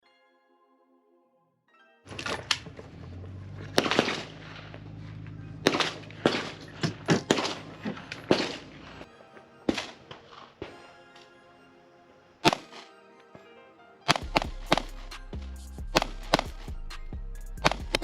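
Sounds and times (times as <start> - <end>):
gunshots: 2.1 - 9.1, 9.7 - 10.8, 12.4 - 12.9, 14.1 - 16.9, 17.6 - 18.0
background music with bass line: 14.1 - 18.0.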